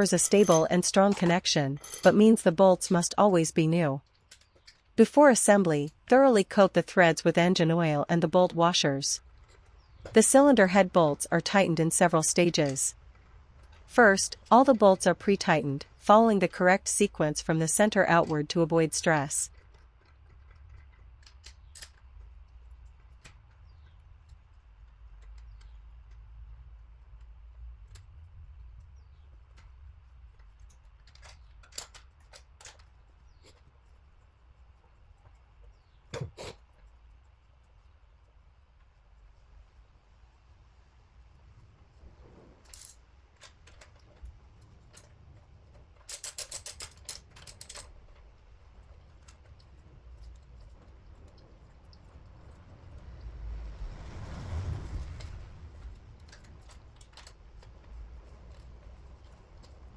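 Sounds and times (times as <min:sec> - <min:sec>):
low steady hum: 0:00.0 - 0:59.9
hand tools tapping on metal: 0:00.1 - 0:02.2.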